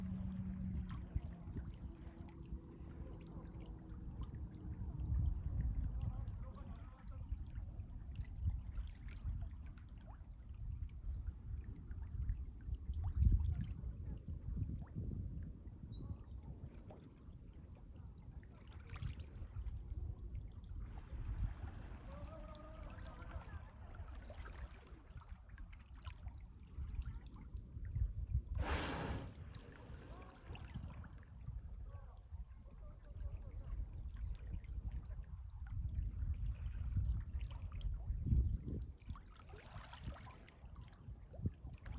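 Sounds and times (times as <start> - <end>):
wind rumbling on microphone: 0.0 - 16.7, 26.7 - 39.2
whale blow whoosh: 28.5 - 31.0
sea water sloshing on shore: 28.6 - 31.4, 39.3 - 40.8.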